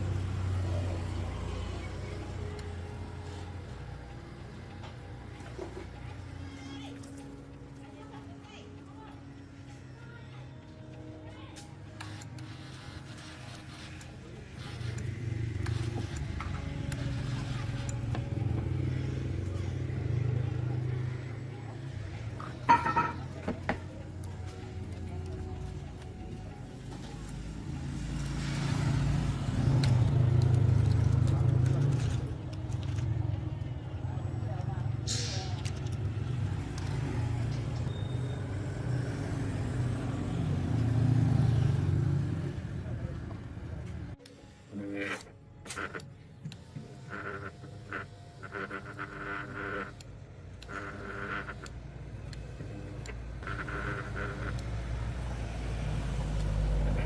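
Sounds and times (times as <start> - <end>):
machine motor humming: 44.6 - 57.0.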